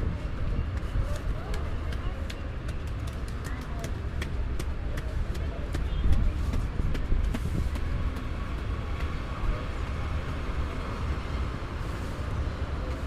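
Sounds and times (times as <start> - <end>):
street noise: 0.0 - 13.0.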